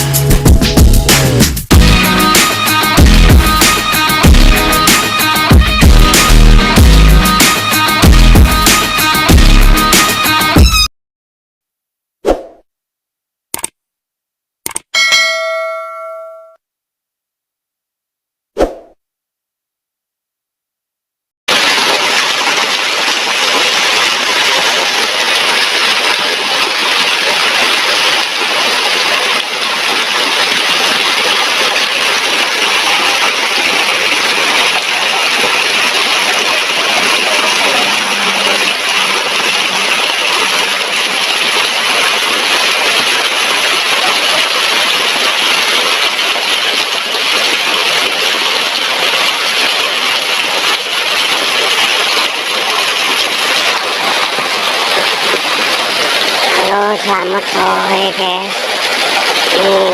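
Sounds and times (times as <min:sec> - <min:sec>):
heavy rain pouring: 0:01.7 - 0:10.4, 0:21.5 - 0:59.9.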